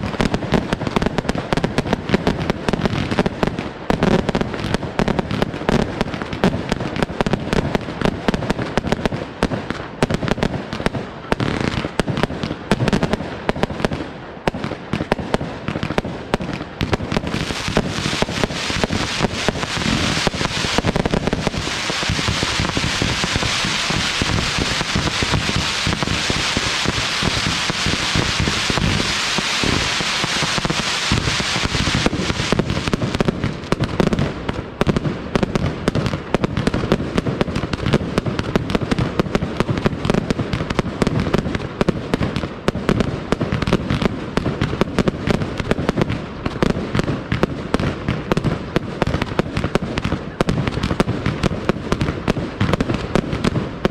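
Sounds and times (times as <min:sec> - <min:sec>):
firework booms and reports: 0:00.0 - 0:53.9
firework crackling: 0:00.0 - 0:53.9.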